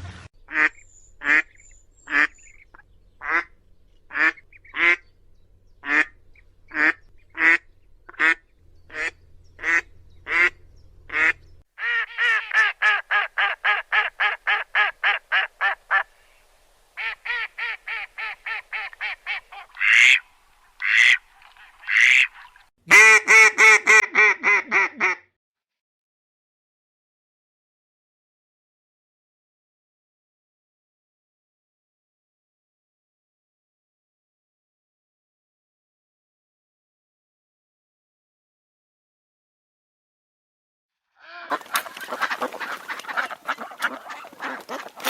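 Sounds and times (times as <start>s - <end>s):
ducks quacking: 0.4s - 5.1s, 5.8s - 16.1s, 17.0s - 20.2s, 20.8s - 25.2s, 41.2s - 45.0s.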